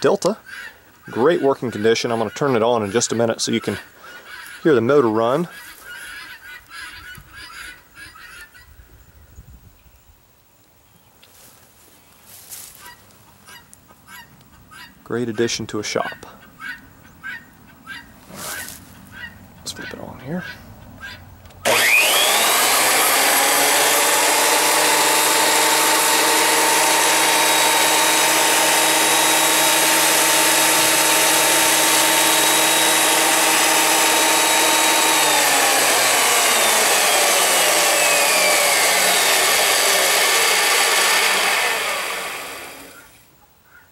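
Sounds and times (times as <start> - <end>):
planer motor whining: 21.5 - 43.2.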